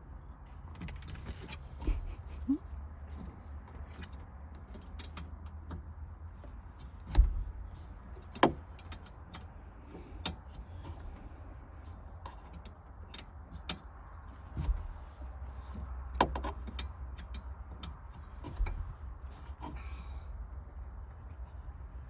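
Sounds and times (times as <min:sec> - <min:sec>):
thump: 0:07.1 - 0:07.5, 0:14.6 - 0:15.0.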